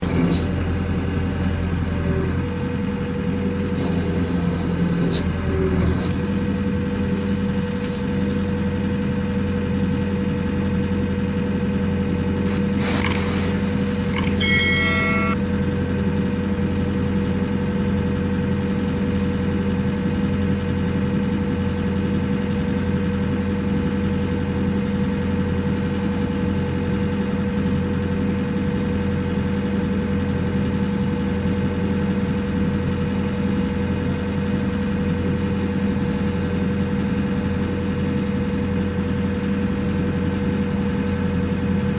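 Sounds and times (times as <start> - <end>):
diesel engine idling: 0.0 - 41.9
brief high-pitched tones: 13.7 - 15.4.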